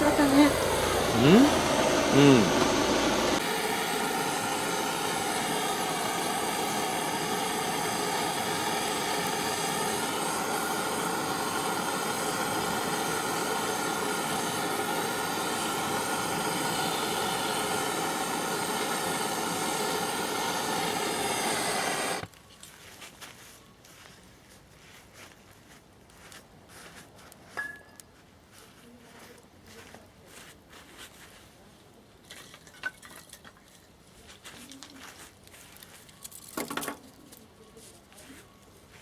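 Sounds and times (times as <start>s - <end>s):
machine drone with whine: 0.0s - 22.3s.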